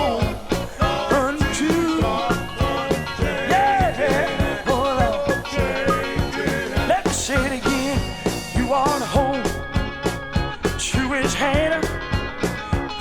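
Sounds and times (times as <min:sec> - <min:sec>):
voices singing gospel song: 0:00.0 - 0:09.6
band with steady beat: 0:00.0 - 0:13.0.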